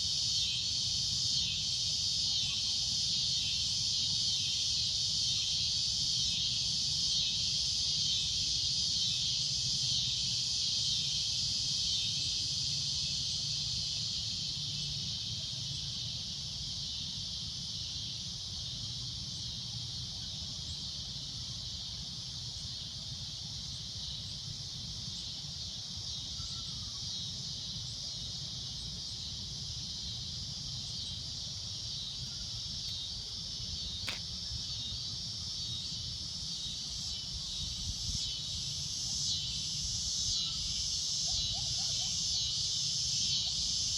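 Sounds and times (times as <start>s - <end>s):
cicadas droning: 0.0s - 43.9s
click: 34.0s - 34.2s.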